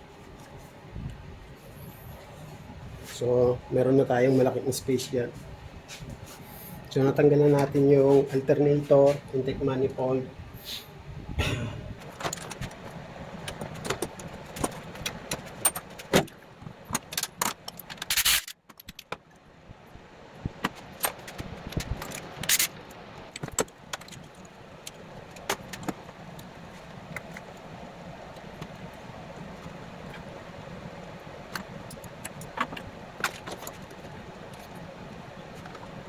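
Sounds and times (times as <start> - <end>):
metal tools clinking: 16.9 - 19.1, 22.0 - 22.8.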